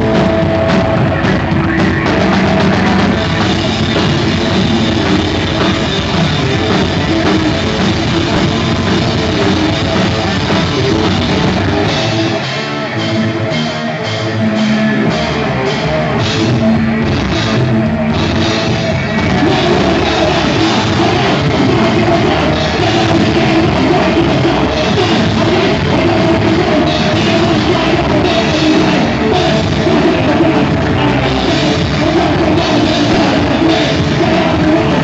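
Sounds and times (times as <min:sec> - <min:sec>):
live thrash metal band: 0:00.0 - 0:35.0.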